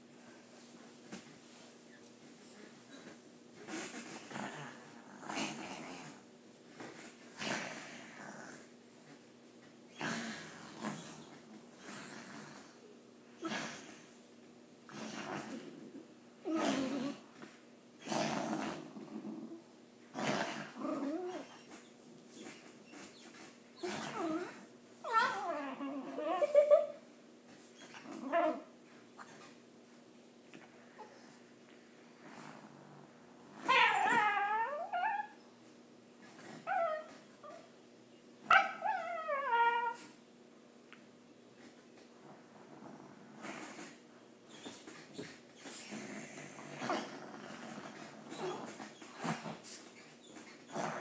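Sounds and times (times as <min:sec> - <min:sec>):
dog wavering vocal calls: 0:23.8 - 0:27.0, 0:33.6 - 0:35.4, 0:38.5 - 0:40.1.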